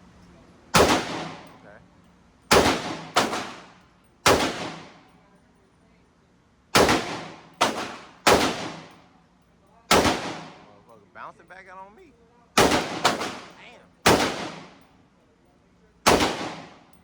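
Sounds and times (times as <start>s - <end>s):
rifle shots with echo: 0.7s - 1.6s, 2.5s - 5.1s, 6.7s - 9.0s, 9.9s - 10.8s, 12.6s - 14.8s, 16.0s - 16.9s.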